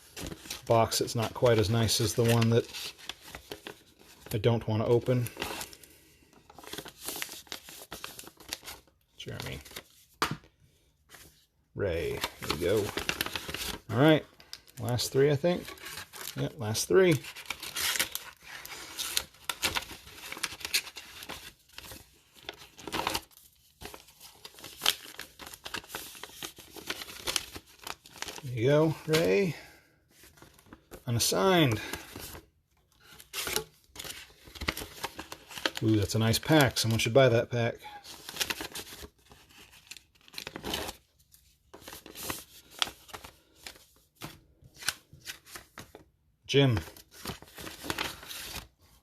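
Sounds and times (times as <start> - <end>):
paper envelopes rustling: 0.0 - 49.0
foil packs crinkling: 12.0 - 32.4, 33.0 - 37.1.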